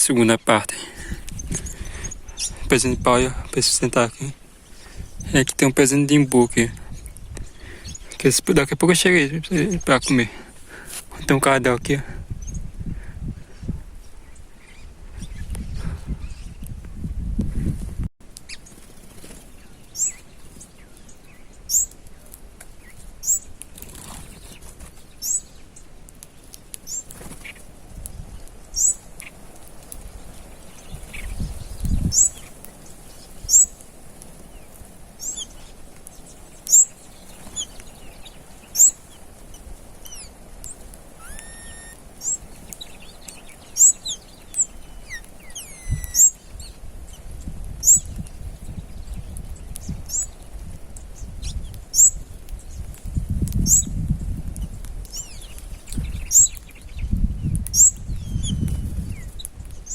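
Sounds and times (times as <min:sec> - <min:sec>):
birds whistling and calling: 0:00.3 - 0:02.7, 0:19.8 - 0:22.0, 0:22.8 - 0:25.6, 0:28.8 - 0:29.3, 0:30.6 - 0:33.8, 0:35.2 - 0:40.3, 0:41.2 - 0:46.8, 0:47.8 - 0:50.4, 0:51.2 - 0:52.2, 0:53.7 - 0:53.9, 0:55.1 - 0:59.9
bird chirping sharply: 0:41.2 - 0:42.4, 0:43.1 - 0:46.5.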